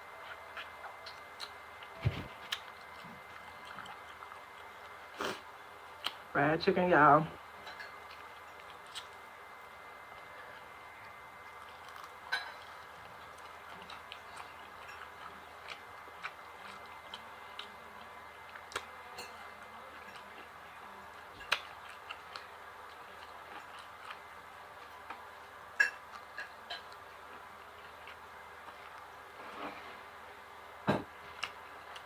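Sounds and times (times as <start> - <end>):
chewing and mouth smacks: 0.2 - 5.0, 7.8 - 9.2, 11.0 - 18.9, 21.4 - 25.2.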